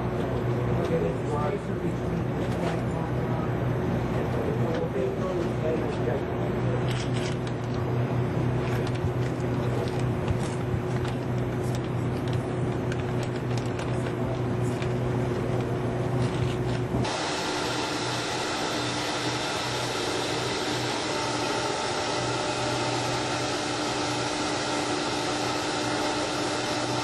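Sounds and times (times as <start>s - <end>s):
low electrical hum: 0.0s - 27.0s
vacuum motor whine and rushing air: 7.3s - 27.0s.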